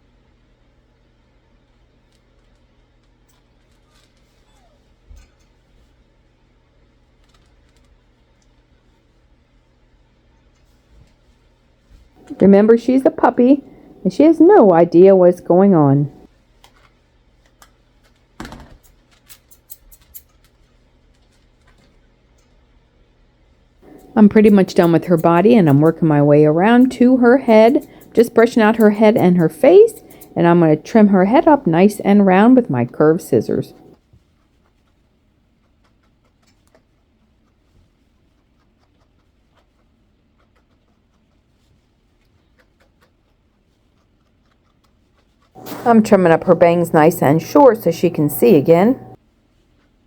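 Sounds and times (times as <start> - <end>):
grooming tools clicking: 23.8 - 32.5
scissors snipping hair: 23.9 - 30.4.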